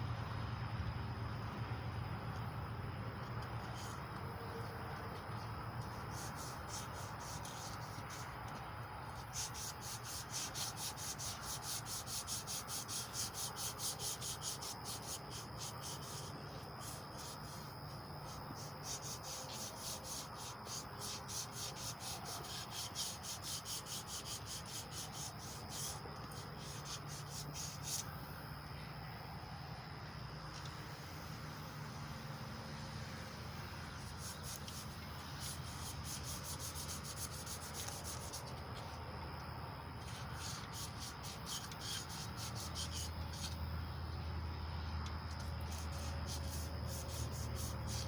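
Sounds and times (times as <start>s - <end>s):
emery cloth rasping on metal: 9.2s - 28.1s, 34.0s - 38.6s, 40.0s - 43.6s, 45.4s - 48.0s.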